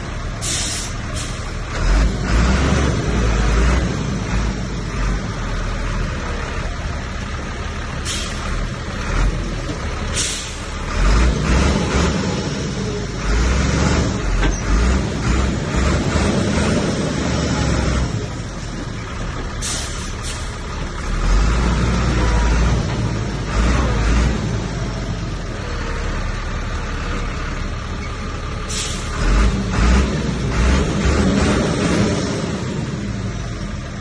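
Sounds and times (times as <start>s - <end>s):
bulldozer diesel engine under load: 0.0s - 34.0s
short high hisses: 0.4s - 1.4s, 10.2s - 10.7s.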